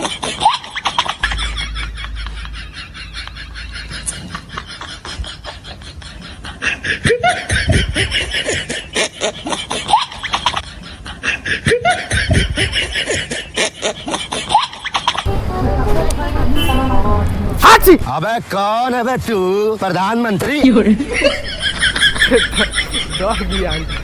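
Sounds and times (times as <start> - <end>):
people laughing: 20.6 - 24.0.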